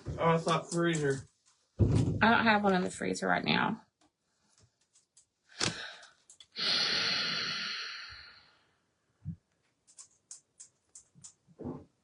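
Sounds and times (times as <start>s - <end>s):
soft thump: 1.8s - 2.4s
person sighing: 5.6s - 6.0s, 6.6s - 8.4s.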